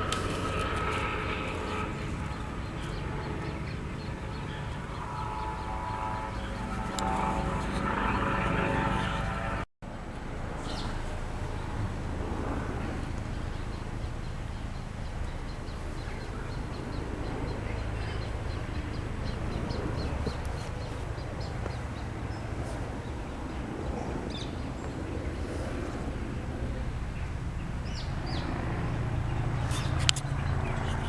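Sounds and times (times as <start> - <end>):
droning engine: 0.0 - 31.0
steady low rumble: 0.0 - 31.0.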